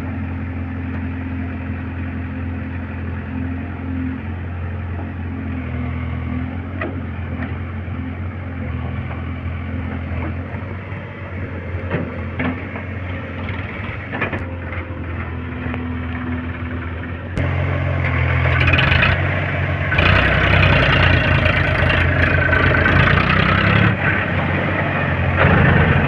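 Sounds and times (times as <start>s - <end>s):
diesel engine running: 0.0s - 26.0s
knocks and clanks: 11.8s - 12.9s.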